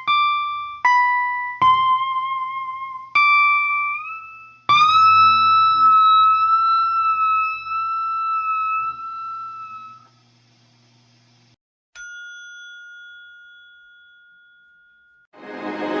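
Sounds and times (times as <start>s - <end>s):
electric guitar lead phrase: 3.7s - 8.0s.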